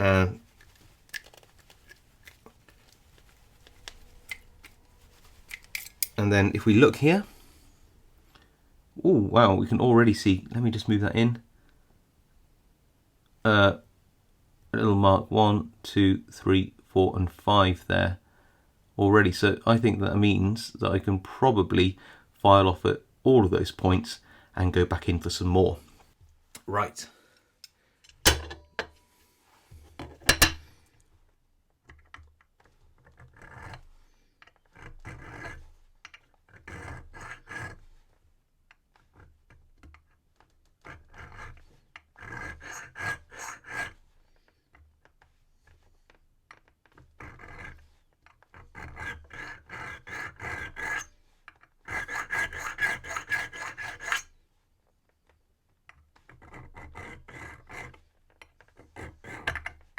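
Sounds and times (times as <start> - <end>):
file rasping on metal: 33.1 - 33.8, 34.7 - 35.7, 36.5 - 38.0, 40.8 - 44.1, 47.2 - 54.4, 56.2 - 59.9.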